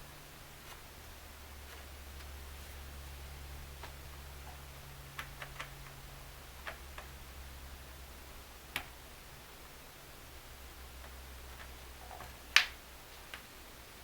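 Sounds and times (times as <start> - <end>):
low steady hum: 0.0 - 14.0.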